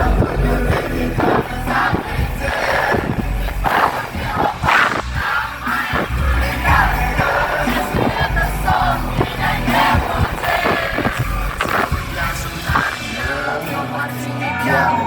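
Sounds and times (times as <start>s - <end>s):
crowd singing along: 0.0s - 15.0s
live pop music with heavy bass: 0.0s - 15.0s.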